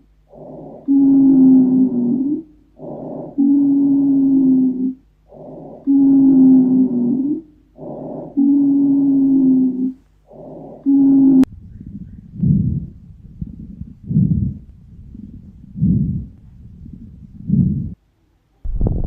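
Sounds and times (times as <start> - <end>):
low muffled thumps: 18.7 - 19.0.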